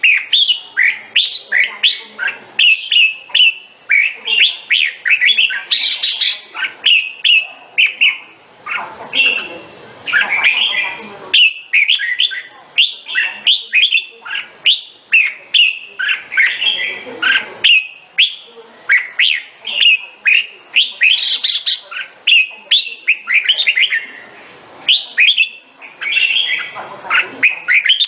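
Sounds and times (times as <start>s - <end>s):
bird singing rapid rising notes: 24.9s - 26.8s.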